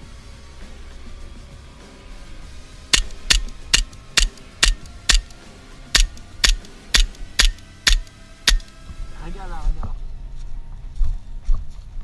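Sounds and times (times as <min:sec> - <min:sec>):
airsoft gun single shots: 0:03.0 - 0:05.4, 0:06.0 - 0:08.7.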